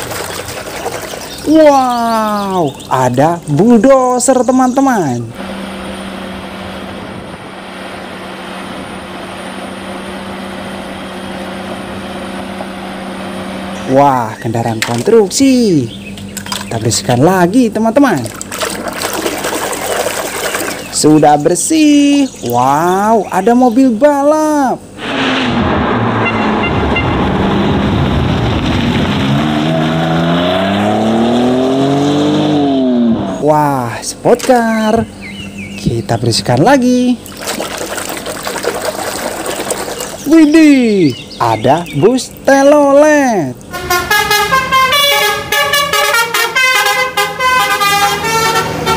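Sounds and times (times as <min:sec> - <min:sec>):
racing car engine revving: 0:25.0 - 0:33.5.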